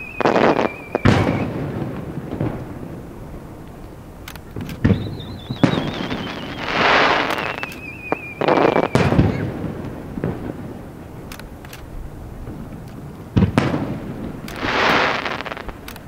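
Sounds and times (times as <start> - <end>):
firework whistle dropping in pitch: 0.0 - 1.6, 4.8 - 9.6
fireworks bangs: 0.0 - 16.0.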